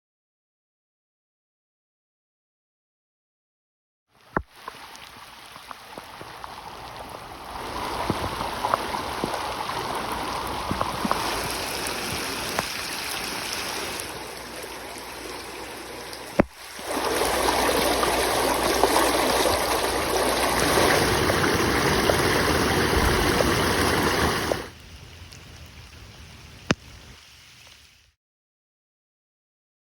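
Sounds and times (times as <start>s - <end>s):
floodwater rushing over street: 4.1s - 27.8s.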